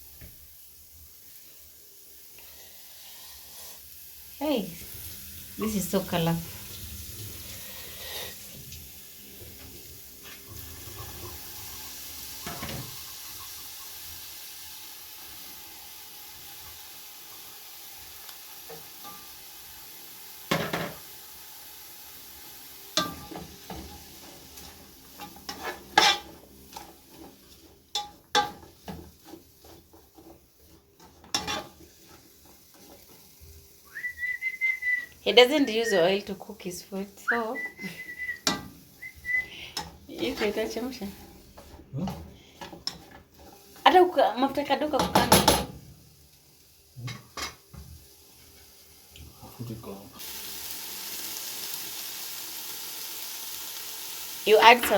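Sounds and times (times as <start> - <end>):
food sizzling in oil: 0.0 - 54.9
metal utensil scraping pan: 9.6 - 14.0, 22.9 - 33.5, 38.4 - 45.9.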